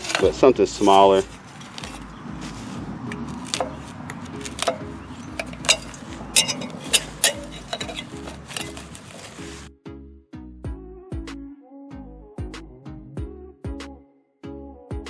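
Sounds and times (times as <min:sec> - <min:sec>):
hand tool clicking and snapping: 0:03.1 - 0:09.4.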